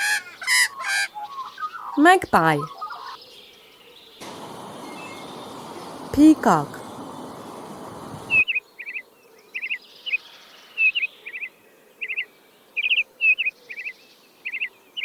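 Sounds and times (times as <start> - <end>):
bird chirping: 0.3 - 9.0
steady hiss: 4.2 - 8.4.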